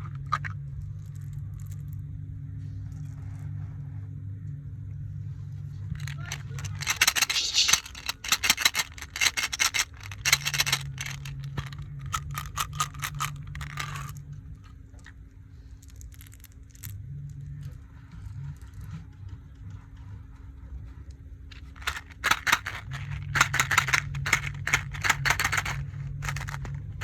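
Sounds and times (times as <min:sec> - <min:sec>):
low steady hum: 0:00.0 - 0:27.0
crackling handling sounds: 0:05.8 - 0:17.0, 0:21.4 - 0:27.0.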